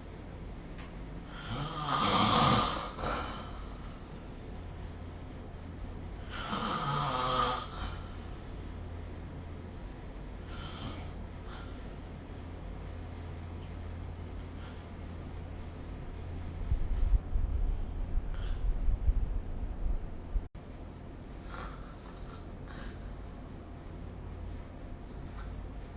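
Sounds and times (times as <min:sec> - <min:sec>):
person snoring: 0:01.3 - 0:03.6, 0:06.2 - 0:08.3, 0:10.4 - 0:11.8.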